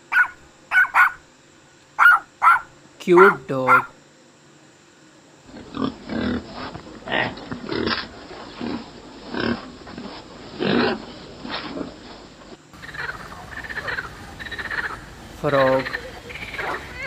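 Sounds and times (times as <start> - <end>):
animal making rough calls: 2.0 - 4.0, 12.8 - 17.0.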